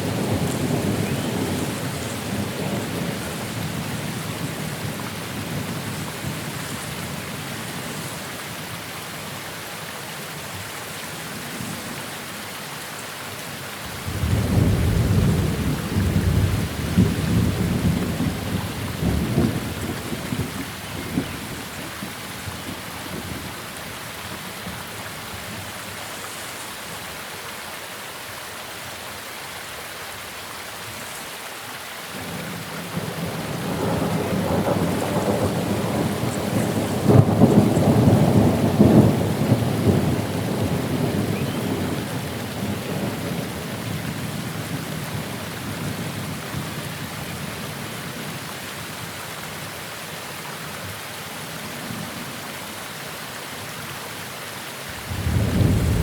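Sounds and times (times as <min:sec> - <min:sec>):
rain hissing: 0:13.0 - 0:27.7, 0:30.8 - 0:56.0
thunder rumbling: 0:13.9 - 0:21.4, 0:33.0 - 0:43.7, 0:55.0 - 0:56.0.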